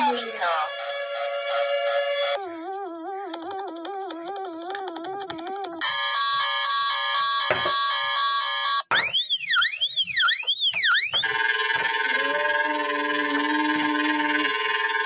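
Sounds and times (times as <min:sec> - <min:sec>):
harsh steady alert tone: 0:02.1 - 0:04.6
siren sweeping up and down: 0:05.8 - 0:15.0.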